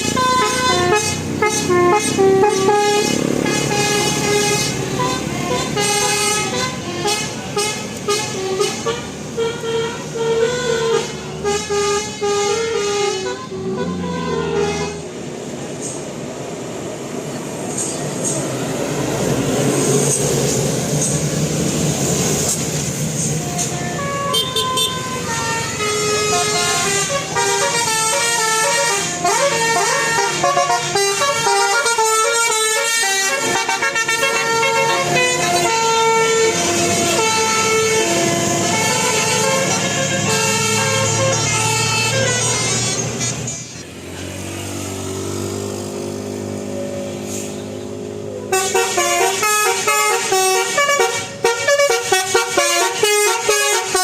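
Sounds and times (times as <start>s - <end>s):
musical air horn melody: 0.0s - 15.1s, 23.4s - 43.2s, 48.4s - 54.0s
rushing noise: 13.6s - 24.2s.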